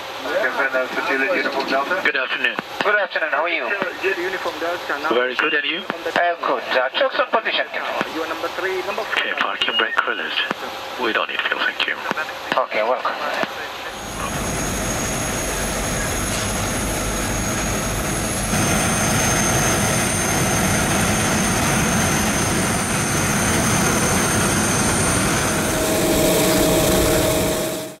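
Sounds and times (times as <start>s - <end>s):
mid-pitched whine: 0.0s - 28.0s
jet airliner rushing: 13.8s - 28.0s.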